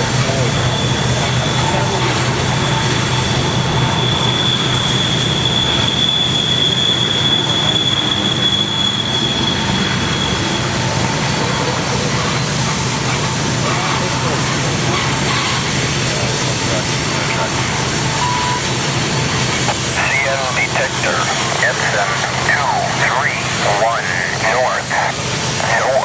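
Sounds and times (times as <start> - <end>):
high wheel squeal: 0.5 - 12.4, 17.9 - 18.8.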